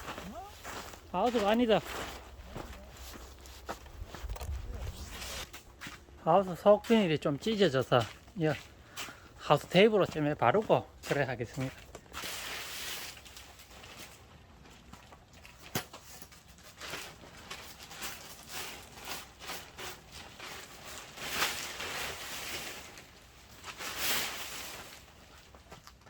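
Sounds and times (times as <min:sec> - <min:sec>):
scratchy sounds: 0:02.7 - 0:05.6
plastic film rustling and crackling: 0:11.2 - 0:26.0.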